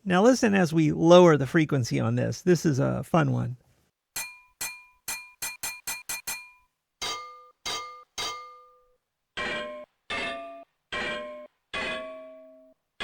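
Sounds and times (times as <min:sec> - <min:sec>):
glass clinks pitched down: 0:04.2 - 0:08.6.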